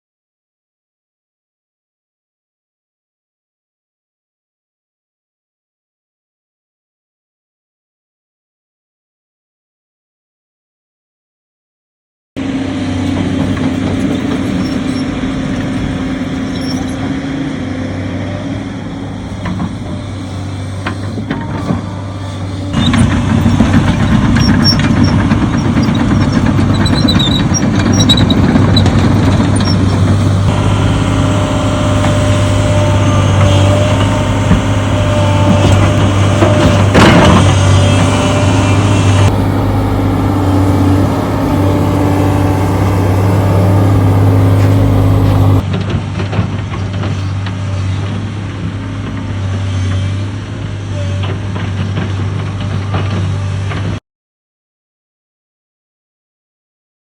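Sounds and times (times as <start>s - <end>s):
engine humming: 12.4s - 45.6s.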